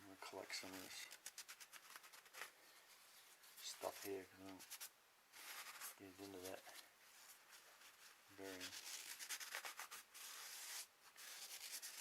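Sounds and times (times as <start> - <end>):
scratchy rubbing strokes: 0.6 - 12.0.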